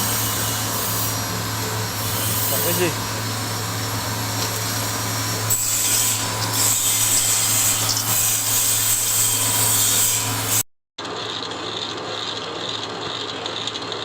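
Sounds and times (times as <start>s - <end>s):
electric motor humming: 0.0s - 10.6s
harsh grinding noise: 0.0s - 10.6s.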